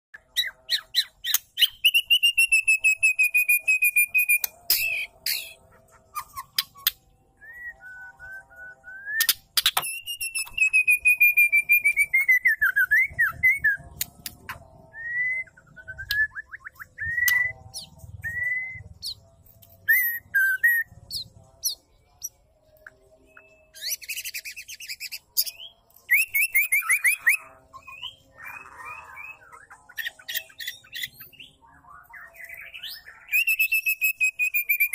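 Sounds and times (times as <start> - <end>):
bird whistling: 0.4 - 13.8, 14.5 - 19.2, 19.9 - 20.9, 32.4 - 34.9
harsh bird chatter: 4.2 - 7.0.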